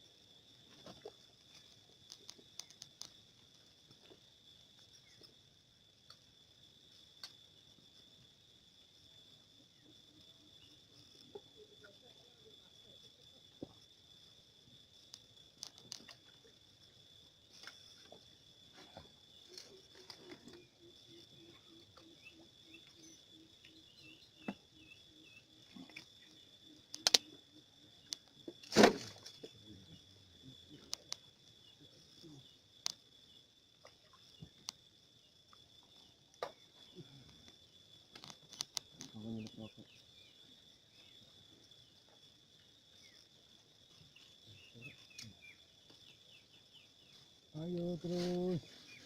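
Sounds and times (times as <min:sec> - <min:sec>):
insects trilling: 0:00.0 - 0:49.0
scattered clicks: 0:26.8 - 0:27.4, 0:37.4 - 0:39.6
sharp click: 0:26.9 - 0:27.3.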